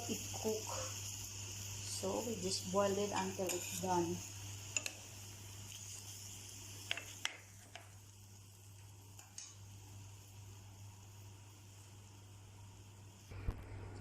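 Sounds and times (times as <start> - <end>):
food hissing while heating: 0.0 - 14.0
utensil clicking against pan: 4.7 - 5.0
low hum: 13.3 - 14.0.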